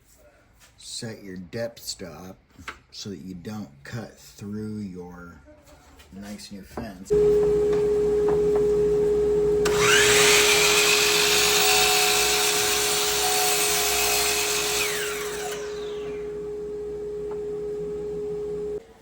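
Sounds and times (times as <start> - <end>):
miter saw motor whine: 7.1 - 18.8
steady hum: 7.1 - 18.8.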